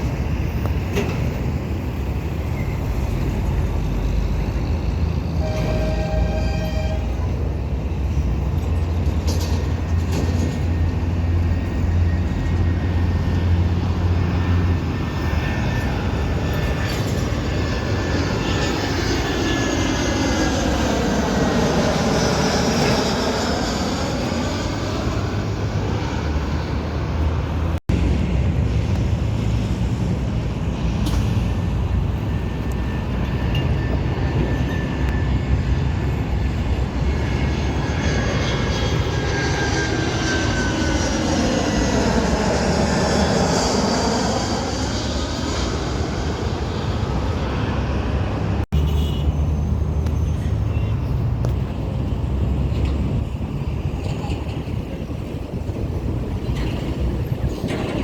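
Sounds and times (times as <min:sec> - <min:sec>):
airliner passing low overhead: 0:00.0 - 0:58.0.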